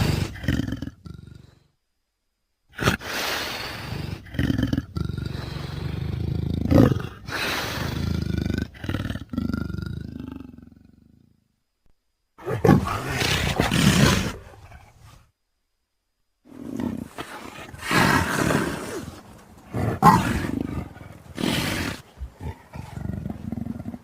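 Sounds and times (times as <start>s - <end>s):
big cat roaring: 12.4s - 15.0s, 16.5s - 24.0s.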